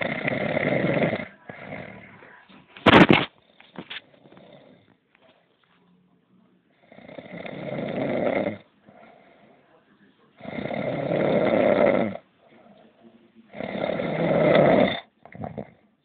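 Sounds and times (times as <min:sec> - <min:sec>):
man snoring: 0:00.0 - 0:02.1, 0:06.8 - 0:08.7, 0:10.4 - 0:12.2, 0:13.5 - 0:15.8
soft breathing: 0:08.6 - 0:10.5, 0:12.2 - 0:13.6.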